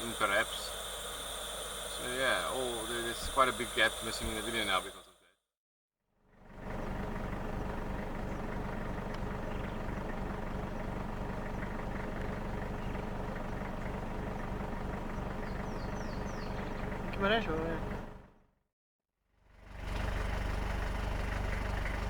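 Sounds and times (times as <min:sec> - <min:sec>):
car engine running: 0:00.0 - 0:05.0, 0:06.3 - 0:18.4, 0:19.6 - 0:22.0
faint high chirps: 0:00.0 - 0:05.2.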